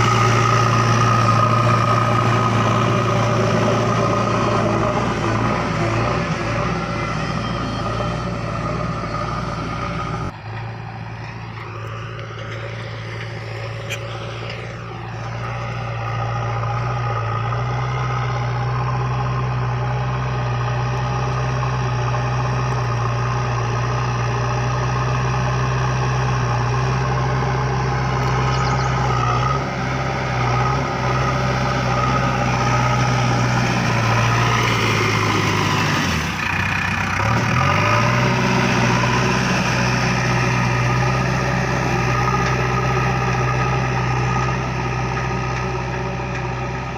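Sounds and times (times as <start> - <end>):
diesel engine running: 0.0 - 46.9
mechanical whine: 28.2 - 29.6.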